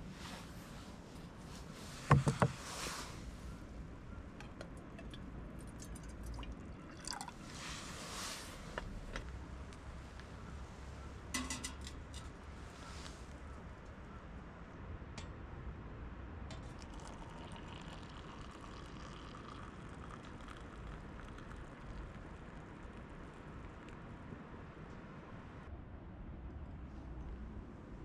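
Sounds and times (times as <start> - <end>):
liquid pouring and trickling: 4.8 - 8.3, 16.5 - 24.0.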